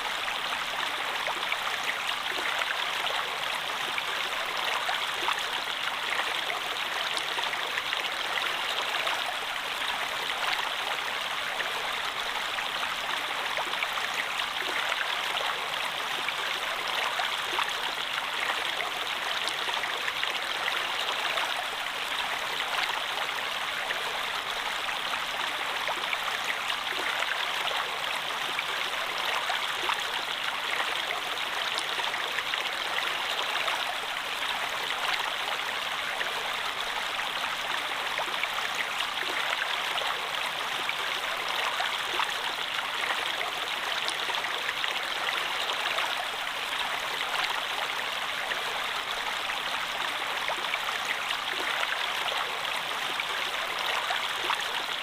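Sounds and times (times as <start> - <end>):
stream running over rocks: 0.0 - 55.0.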